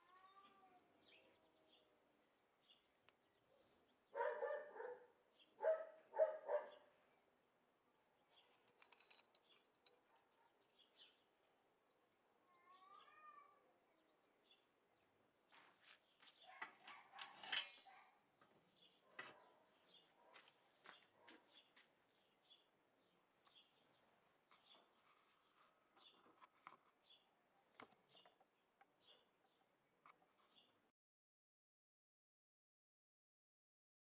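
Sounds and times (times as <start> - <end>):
faint bird chirps: 0.0 - 1.9
dog barking: 4.1 - 6.9.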